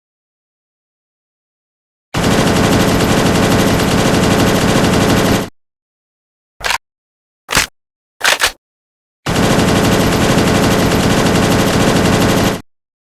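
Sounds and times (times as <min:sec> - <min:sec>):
rifle full-auto burst: 0:02.2 - 0:05.5, 0:09.3 - 0:12.6.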